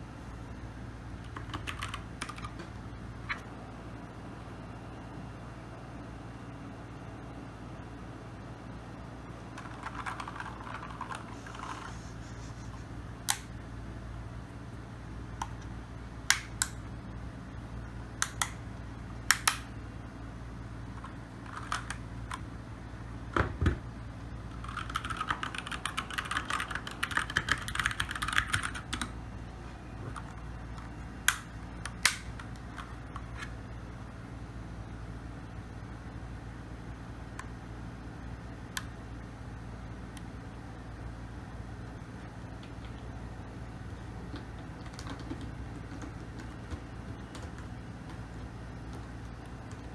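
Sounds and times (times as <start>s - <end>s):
mechanical keyboard keystrokes: 1.3s - 2.6s, 9.6s - 11.8s, 21.5s - 22.4s, 24.6s - 29.1s, 44.3s - 48.2s.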